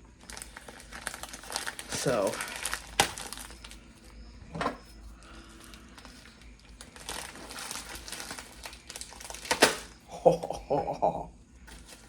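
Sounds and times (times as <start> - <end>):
packaging crinkling: 0.2 - 10.1, 11.6 - 12.0.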